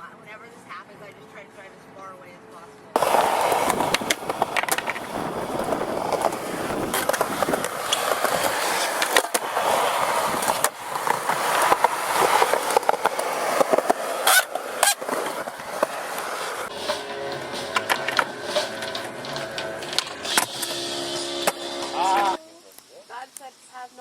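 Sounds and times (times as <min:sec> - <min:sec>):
skateboard wheels rolling on concrete: 0:02.9 - 0:22.4
skateboard clacking on ground: 0:03.0 - 0:20.8.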